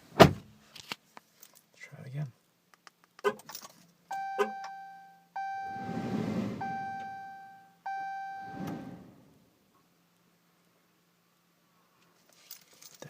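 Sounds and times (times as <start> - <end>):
dashboard warning chime dinging: 4.1 - 9.0
rushing noise: 5.7 - 6.9, 8.4 - 9.4.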